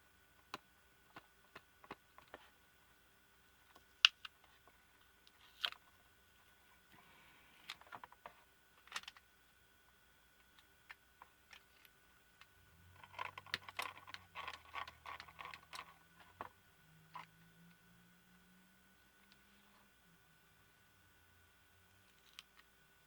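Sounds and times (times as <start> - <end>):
small parts clicking and tapping: 0.4 - 2.5, 7.6 - 9.3, 10.4 - 17.8, 22.0 - 22.7.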